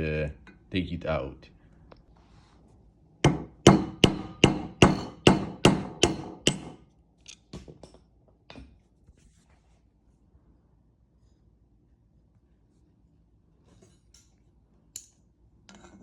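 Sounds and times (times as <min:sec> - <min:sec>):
hammer tapping on screwdriver: 0:03.3 - 0:06.8.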